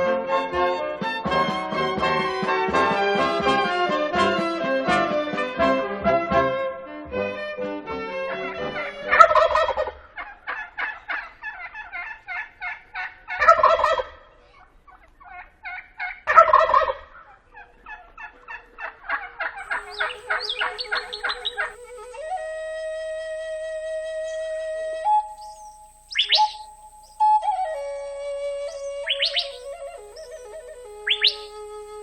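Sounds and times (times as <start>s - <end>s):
wild turkey gobbling: 8.7s - 32.0s
sustained musical tones: 19.6s - 32.0s.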